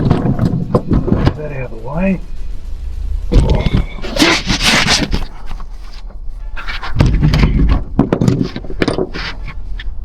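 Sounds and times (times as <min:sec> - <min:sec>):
clattering and scraping objects: 0:03.3 - 0:10.0.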